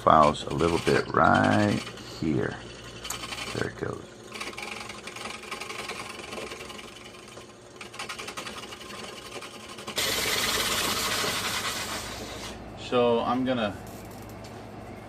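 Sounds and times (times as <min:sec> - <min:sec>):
drill press whirring: 0:00.0 - 0:12.7.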